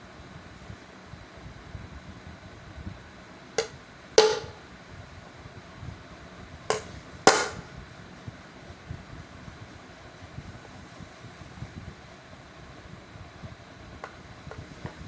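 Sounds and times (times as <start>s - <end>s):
sharp knocks on hard object: 3.6s - 4.6s, 6.7s - 7.7s.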